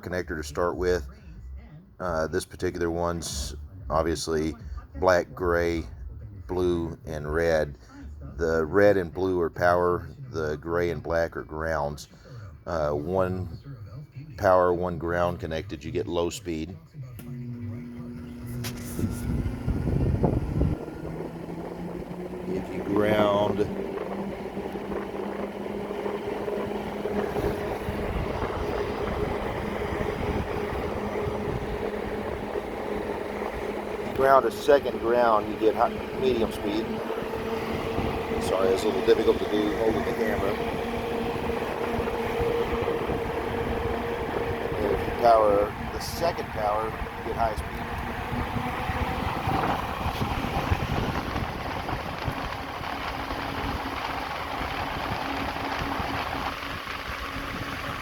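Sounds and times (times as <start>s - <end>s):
electric cooling fan running: 0.0s - 58.0s.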